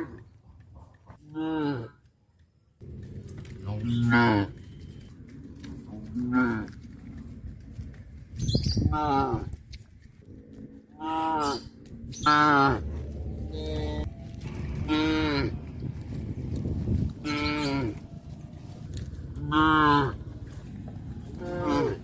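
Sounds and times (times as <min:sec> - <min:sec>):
cows mooing: 0:03.3 - 0:05.0, 0:10.3 - 0:15.7, 0:17.2 - 0:18.1, 0:19.3 - 0:20.5, 0:21.3 - 0:22.0.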